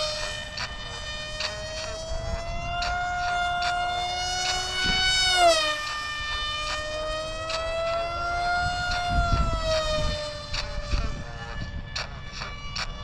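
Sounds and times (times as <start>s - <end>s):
model airplane motor whining: 0.0s - 13.0s.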